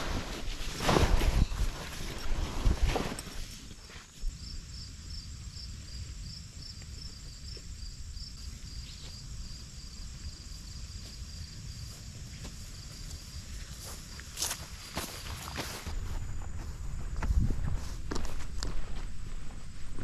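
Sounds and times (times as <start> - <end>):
insect chirping: 3.3 - 20.0.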